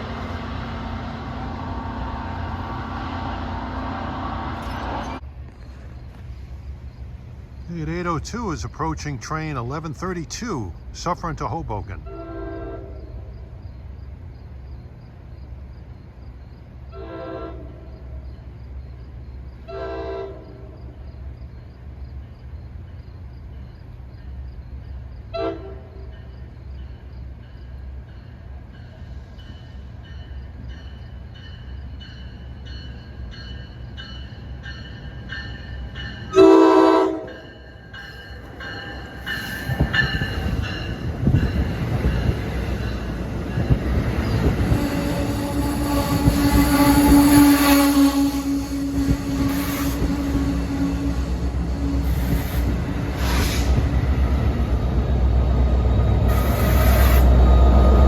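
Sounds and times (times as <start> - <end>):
train rumble: 0.0 - 58.0
train horn blasts: 12.0 - 13.3, 16.9 - 18.0, 19.7 - 20.8, 25.3 - 26.1, 36.3 - 37.7, 44.4 - 53.8
crossing bell ringing: 26.1 - 44.7.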